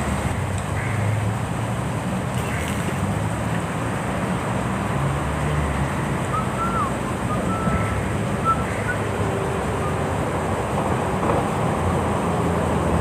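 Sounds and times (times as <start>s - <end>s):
river flowing: 0.0s - 13.0s
faint high whistles: 6.3s - 9.1s.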